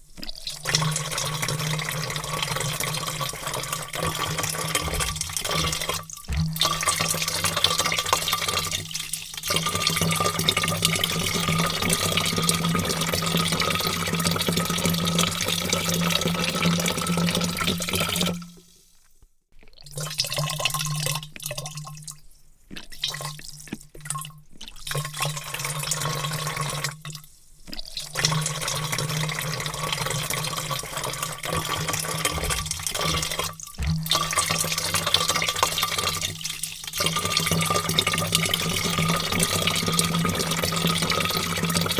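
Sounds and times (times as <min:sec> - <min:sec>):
water pouring into a vat: 0:00.0 - 0:18.9, 0:19.6 - 0:41.9.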